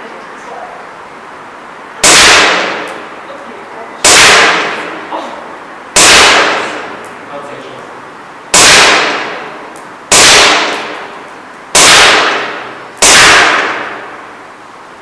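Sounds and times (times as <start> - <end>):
airsoft pistol shots echoing: 2.0 - 3.1, 4.0 - 5.0, 6.0 - 7.0, 8.5 - 14.3.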